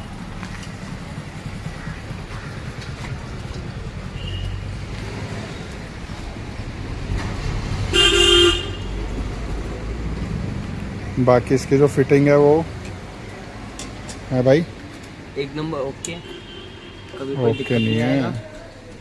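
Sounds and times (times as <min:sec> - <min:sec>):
low traffic rumble: 0:00.0 - 0:19.0
vehicle horn honking: 0:04.1 - 0:04.7, 0:07.9 - 0:09.0, 0:16.2 - 0:18.4.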